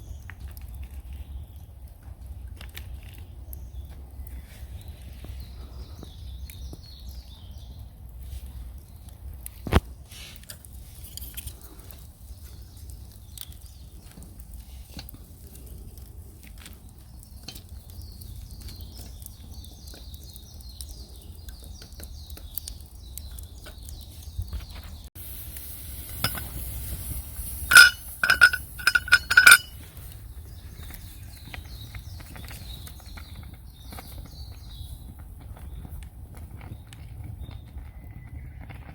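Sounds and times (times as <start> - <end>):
metal cookware clinking: 26.2 - 26.5, 27.7 - 29.7.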